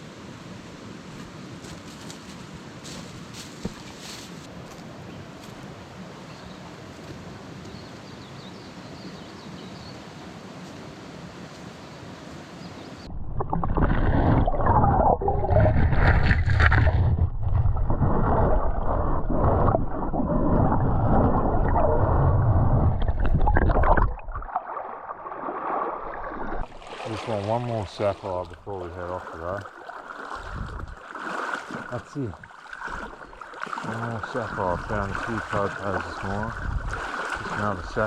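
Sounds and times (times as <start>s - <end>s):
water sloshing and gurgling: 13.0s - 38.0s
river water rushing: 24.6s - 38.0s.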